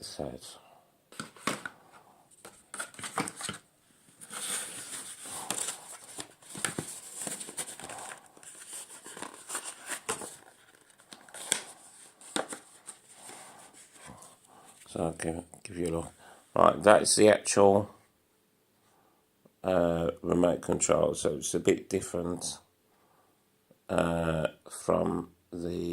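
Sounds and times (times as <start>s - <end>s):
packaging crinkling and rustling: 2.4s - 14.4s.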